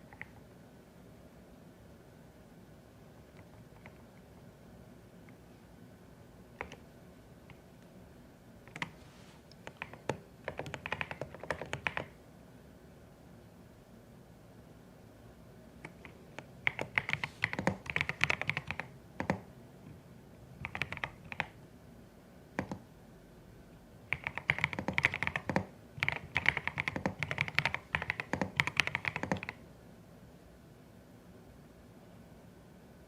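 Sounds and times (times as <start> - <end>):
typing on mechanical keyboard: 6.6 - 6.8, 8.7 - 9.0, 9.6 - 12.2, 15.8 - 19.5, 20.6 - 21.6, 22.6 - 22.8, 24.1 - 29.6.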